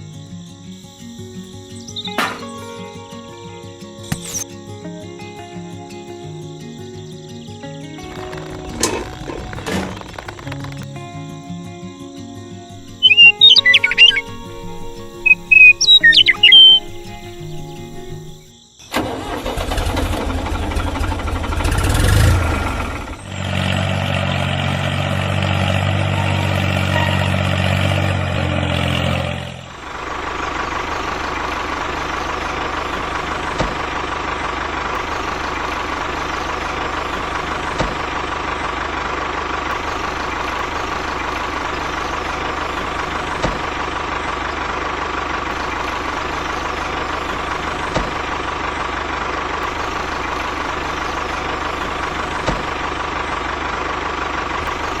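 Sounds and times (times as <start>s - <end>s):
click: 4.0s - 4.5s
small engine running: 18.9s - 55.0s.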